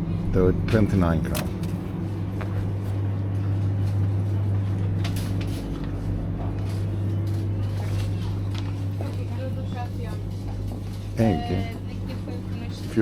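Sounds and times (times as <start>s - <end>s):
refrigerator electrical hum: 0.0s - 13.0s.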